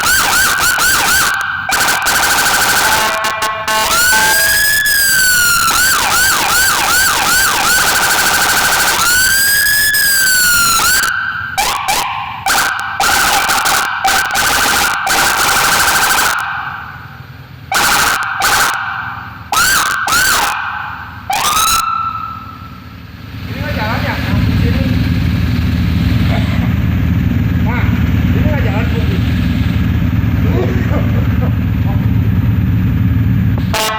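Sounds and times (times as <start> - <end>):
electronic vehicle siren: 0.0 - 24.0, 33.6 - 33.9.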